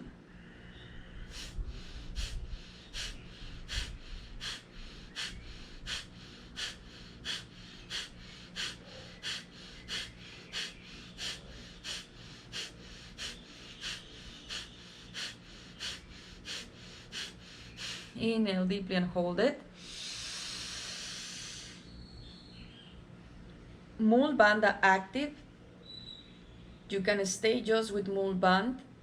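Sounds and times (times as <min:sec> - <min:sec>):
forceful nasal exhalations: 0:01.2 - 0:18.2, 0:19.8 - 0:21.9.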